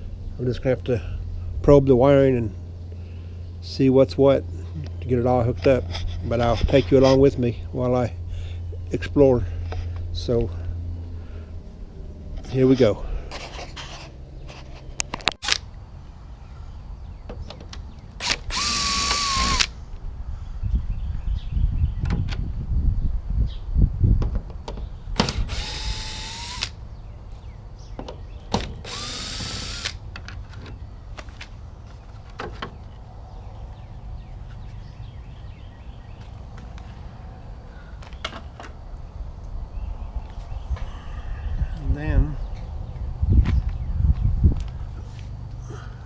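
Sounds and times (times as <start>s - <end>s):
cordless drill motor whine: 18.2s - 19.7s, 25.2s - 26.8s, 28.8s - 30.0s
wind rumbling on microphone: 18.5s - 26.6s, 38.6s - 45.4s.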